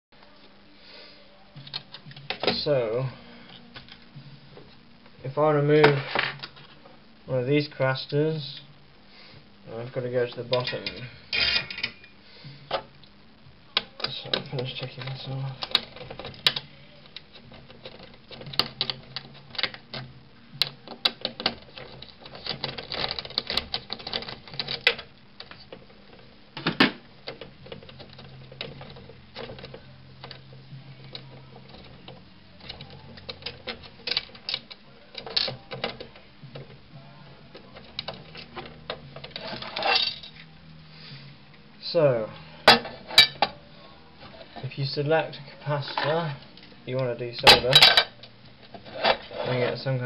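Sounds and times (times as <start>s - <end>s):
faint low hum: 0.1s - 50.0s
hand tools tapping circuit board: 13.8s - 25.9s.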